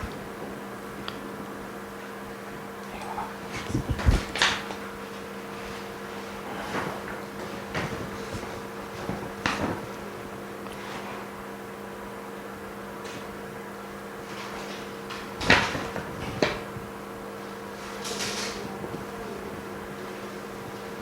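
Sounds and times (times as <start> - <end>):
laminating machine humming: 0.0 - 21.0.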